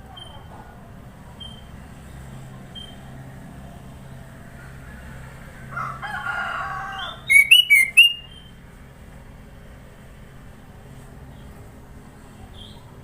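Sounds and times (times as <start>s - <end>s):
rooster crowing: 4.9s - 8.2s
bird chirping: 7.2s - 8.5s.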